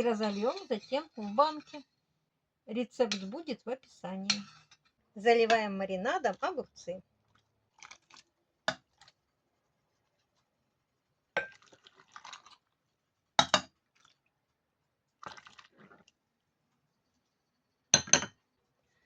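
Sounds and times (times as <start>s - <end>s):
glass jars clinking: 0.0s - 1.8s, 18.0s - 18.4s.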